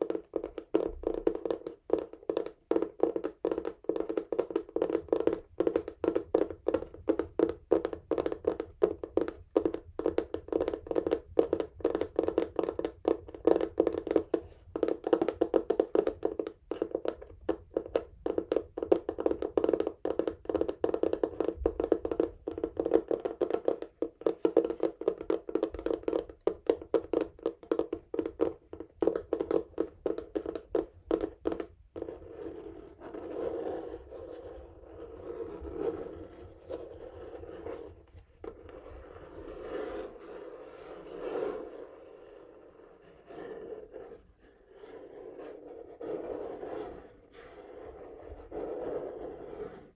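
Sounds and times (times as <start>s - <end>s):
scratching and rubbing on cardboard: 28.2s - 49.9s.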